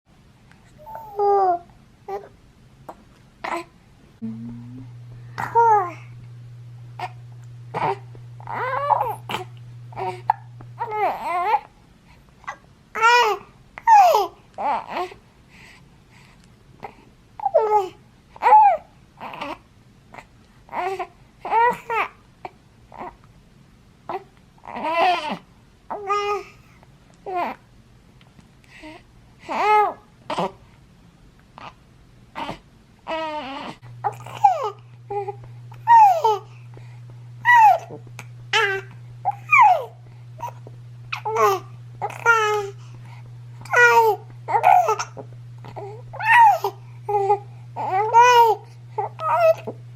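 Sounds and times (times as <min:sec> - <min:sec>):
baby cooing and babbling: 0:00.8 - 0:02.3, 0:03.4 - 0:06.1, 0:07.0 - 0:11.7, 0:13.0 - 0:15.2, 0:17.4 - 0:19.6, 0:24.1 - 0:26.5, 0:32.4 - 0:36.5, 0:37.4 - 0:42.8, 0:43.6 - 0:49.8.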